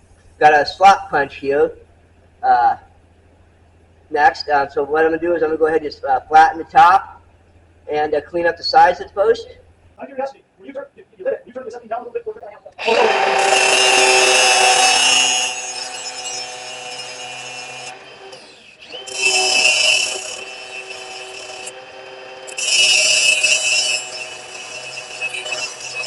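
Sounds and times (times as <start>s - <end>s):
grinder motor whine: 12.8s - 26.0s
steel rasping on grinder: 12.8s - 26.0s.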